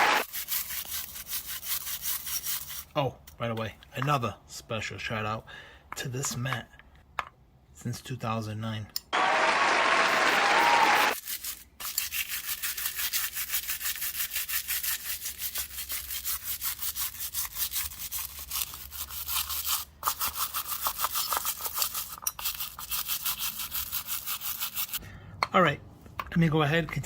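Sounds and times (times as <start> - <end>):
brush scrubbing metal parts: 0.0 - 3.0, 11.1 - 25.0.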